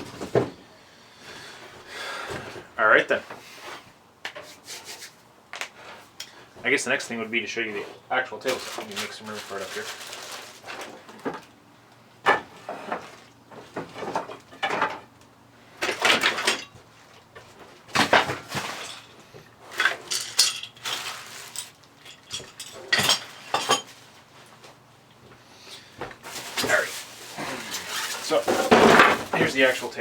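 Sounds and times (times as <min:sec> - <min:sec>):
tools clattering on a workbench: 0:12.2 - 0:15.2, 0:15.8 - 0:24.8, 0:27.7 - 0:29.7.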